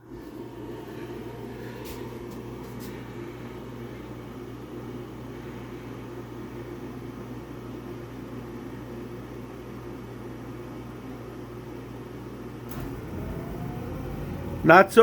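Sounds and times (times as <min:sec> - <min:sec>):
furnace motor hum: 0:00.0 - 0:08.5, 0:10.9 - 0:15.0
blower air rushing: 0:12.7 - 0:15.0.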